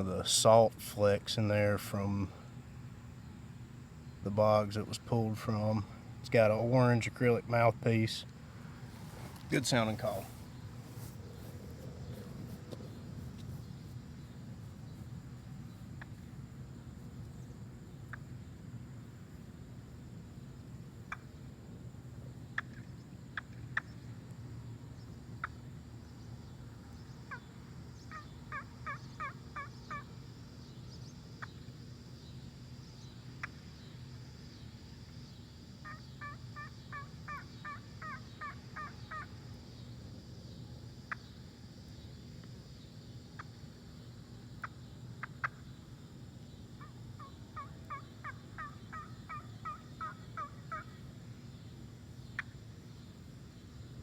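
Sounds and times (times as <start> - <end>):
short sharp turkey calls: 8.9 - 13.7, 28.1 - 30.1, 35.8 - 39.4, 44.6 - 45.7, 46.8 - 51.0
turkey call yelps: 28.1 - 30.1, 35.8 - 39.3, 46.8 - 51.0.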